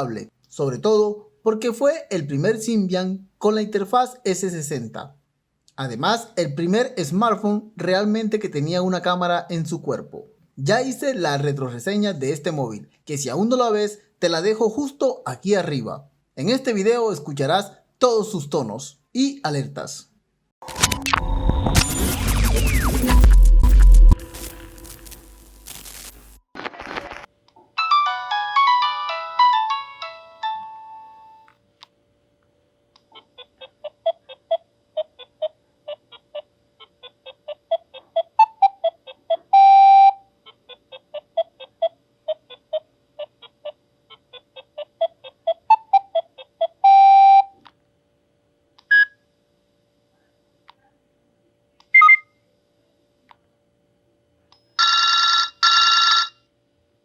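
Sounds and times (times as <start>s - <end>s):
electronic ringtone melody: 27.8s - 31.5s, 38.4s - 40.2s, 45.7s - 47.5s, 52.0s - 52.2s
alert beeps: 38.4s - 40.2s, 46.8s - 47.5s, 48.9s - 49.2s, 52.0s - 52.3s
phone ringtone chime: 52.0s - 52.2s, 54.8s - 56.4s.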